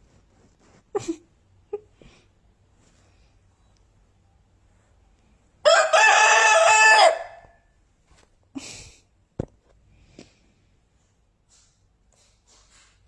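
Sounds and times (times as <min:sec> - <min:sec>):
rooster crowing: 0:05.6 - 0:07.6.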